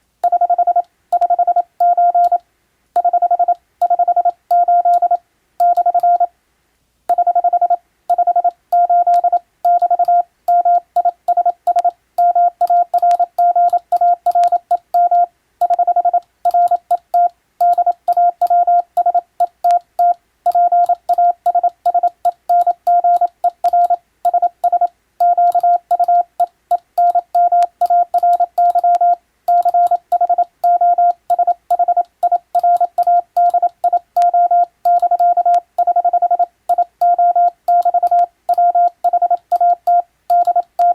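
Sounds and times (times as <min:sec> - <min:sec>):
morse code beeping: 0:00.2 - 0:02.4, 0:03.0 - 0:06.3, 0:07.1 - 0:40.9.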